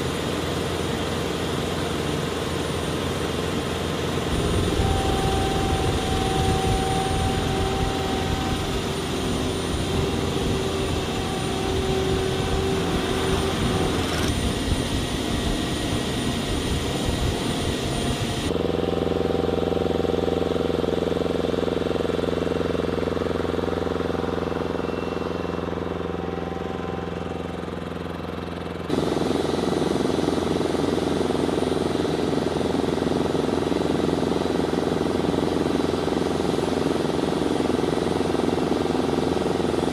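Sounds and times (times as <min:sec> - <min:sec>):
aircraft and machinery drone: 0:00.0 - 0:39.9
steady whining tones: 0:00.0 - 0:39.9.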